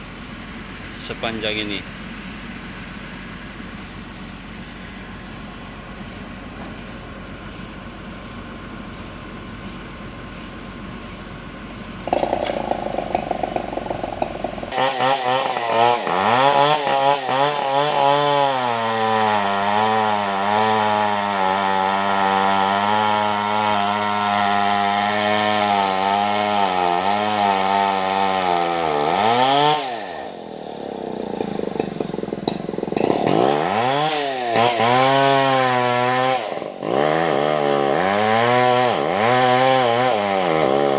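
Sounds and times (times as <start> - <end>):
low engine rumble: 0.0 - 14.8, 30.4 - 33.4
chainsaw cutting log: 1.0 - 1.8, 12.0 - 40.9.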